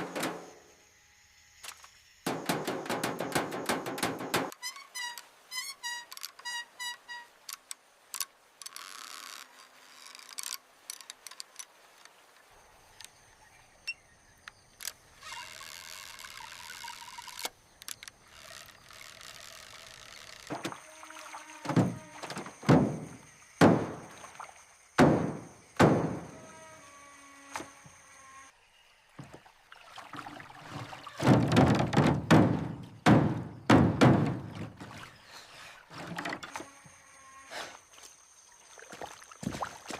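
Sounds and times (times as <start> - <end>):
heavy thunks falling in pitch: 21.7 - 24.0, 31.2 - 34.9.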